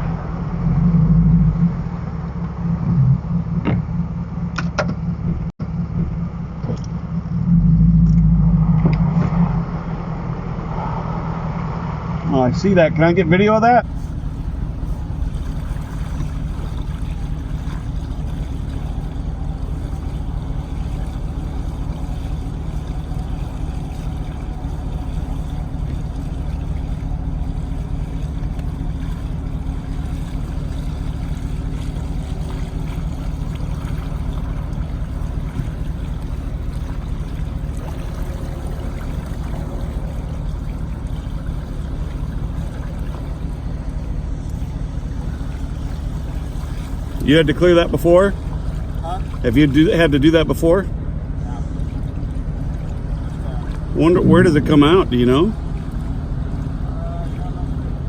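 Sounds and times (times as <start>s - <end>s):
vehicle engine idling: 0.0s - 58.0s
running water and rain: 13.8s - 50.8s.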